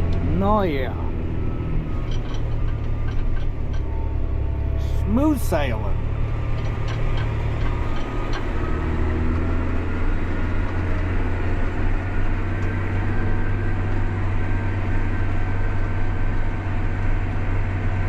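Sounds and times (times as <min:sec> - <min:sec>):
tractor diesel engine drone: 0:00.0 - 0:18.0.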